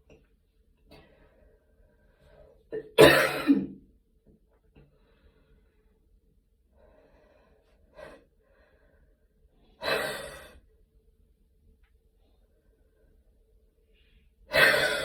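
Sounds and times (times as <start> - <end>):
woman coughing: 2.8 - 3.8.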